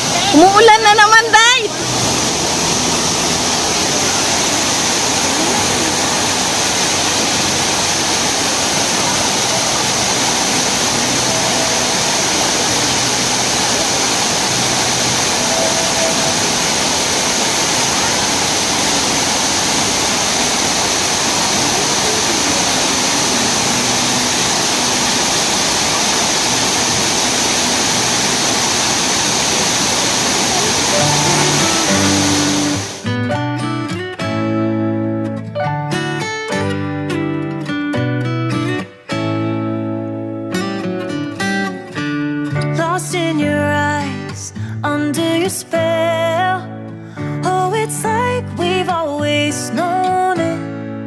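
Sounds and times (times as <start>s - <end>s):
waterfall rushing: 0.0s - 33.1s.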